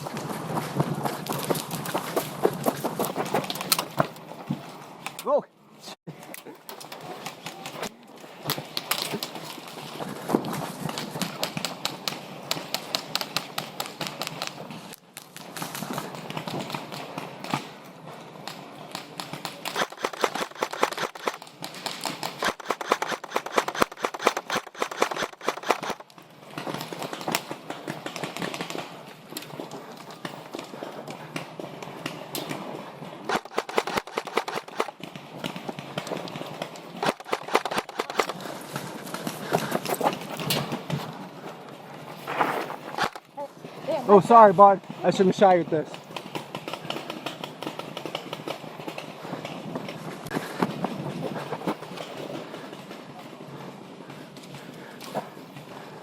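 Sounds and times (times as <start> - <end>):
airsoft guns firing: 19.0 - 26.1, 33.3 - 36.0, 36.9 - 38.4.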